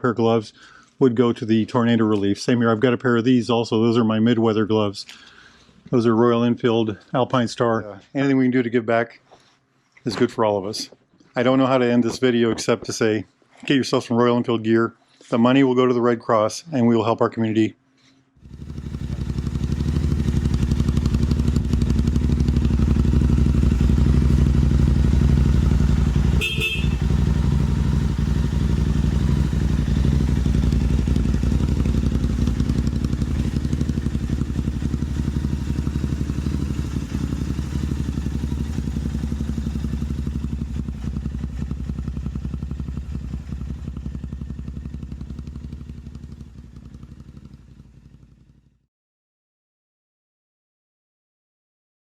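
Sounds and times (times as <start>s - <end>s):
motorcycle engine running: 18.4s - 48.8s.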